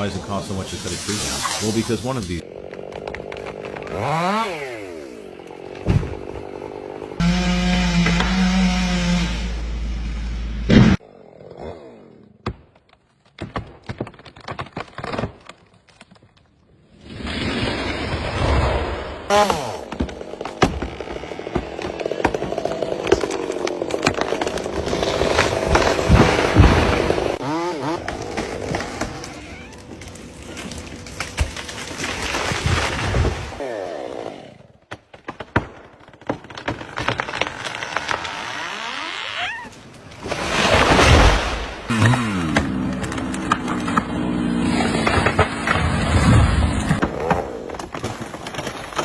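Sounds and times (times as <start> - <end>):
wood cracking: 2.4 - 9.2, 12.4 - 18.3, 19.3 - 33.6, 34.8 - 49.0
chainsaw running: 2.4 - 10.7, 19.3 - 32.4, 41.9 - 47.0.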